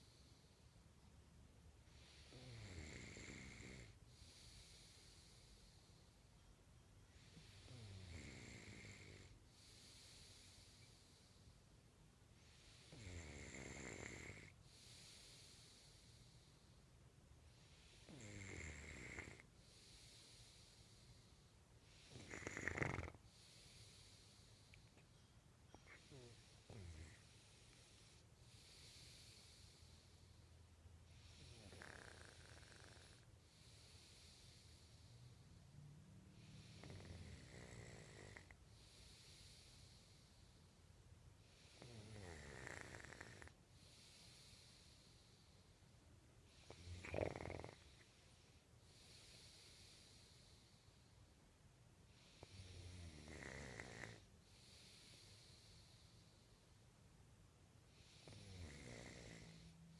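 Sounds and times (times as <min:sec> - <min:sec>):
quiet breathing: 0:00.0 - 0:59.9
person snoring: 0:01.9 - 0:05.7, 0:07.2 - 0:11.0, 0:12.5 - 0:16.2, 0:17.8 - 0:20.9, 0:21.9 - 0:24.7, 0:25.7 - 0:29.9, 0:31.2 - 0:34.9, 0:36.4 - 0:39.9, 0:41.5 - 0:44.9, 0:46.5 - 0:48.2, 0:52.1 - 0:55.7, 0:57.9 - 0:59.8.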